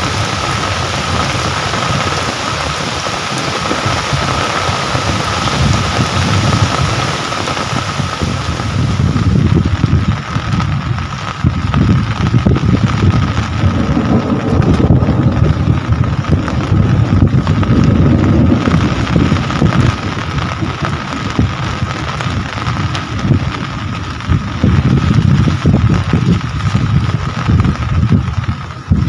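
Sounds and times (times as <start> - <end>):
rain falling: 0.0 - 29.0
wind buffeting microphone: 0.0 - 29.0.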